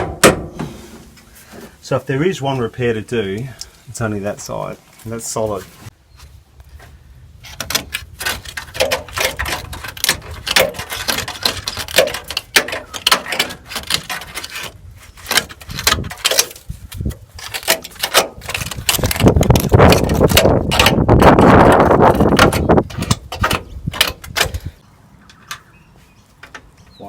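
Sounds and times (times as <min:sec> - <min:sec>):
hand tools clicking on screws: 0:07.5 - 0:24.7.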